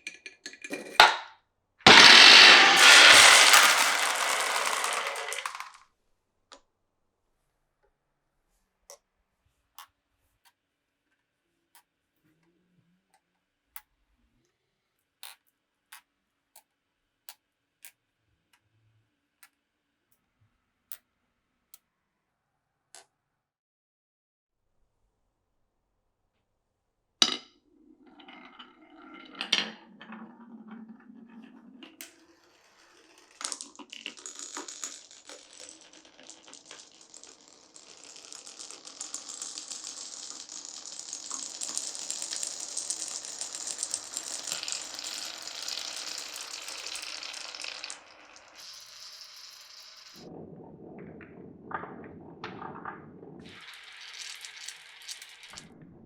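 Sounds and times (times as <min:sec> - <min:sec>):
marbles rolling on wooden tracks: 0:01.9 - 0:05.8, 0:27.2 - 0:56.0.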